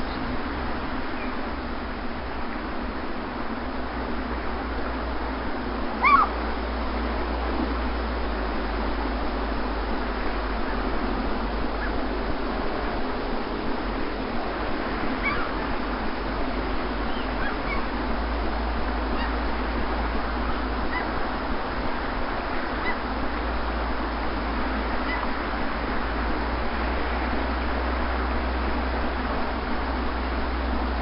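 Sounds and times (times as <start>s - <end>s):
sea waves washing onto beach: 0.0s - 31.0s
faint bird calls: 1.1s - 1.4s, 6.0s - 6.4s, 11.8s - 12.0s, 15.2s - 15.8s, 17.0s - 18.0s, 19.0s - 19.5s, 20.8s - 21.2s, 22.7s - 23.1s, 25.0s - 25.4s.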